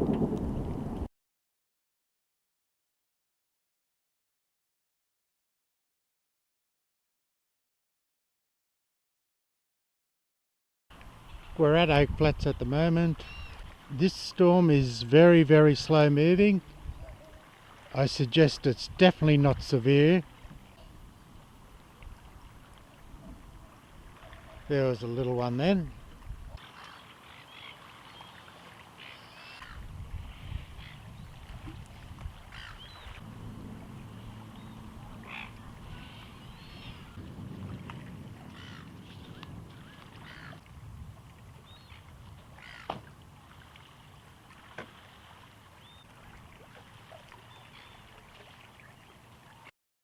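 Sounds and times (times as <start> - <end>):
distant thunder rumbling: 0.0 - 1.1, 33.0 - 40.7
birds calling: 11.2 - 18.3, 20.0 - 25.8, 26.6 - 37.3, 38.4 - 40.7, 41.6 - 43.1, 45.7 - 49.7.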